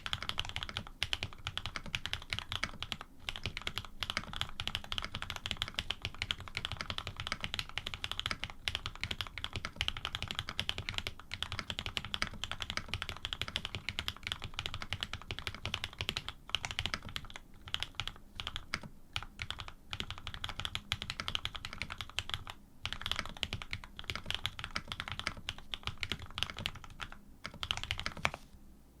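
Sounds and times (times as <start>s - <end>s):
mechanical keyboard typing: 0.0s - 28.4s.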